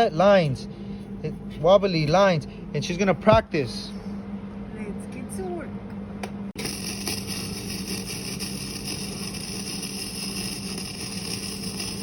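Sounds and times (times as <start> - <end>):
welding arc crackling and hissing: 6.6 - 12.0.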